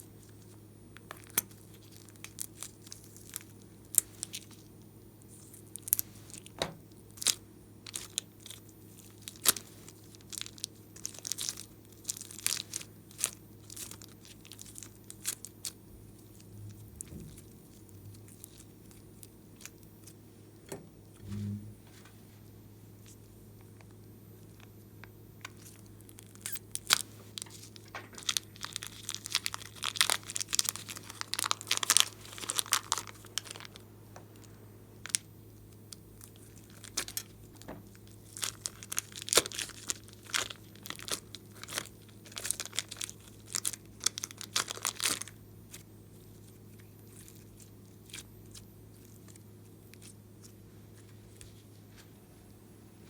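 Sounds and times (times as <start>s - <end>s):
steady low hum: 0.0s - 53.0s
slime crackling and tearing: 7.1s - 20.2s, 25.5s - 33.8s, 38.0s - 50.6s.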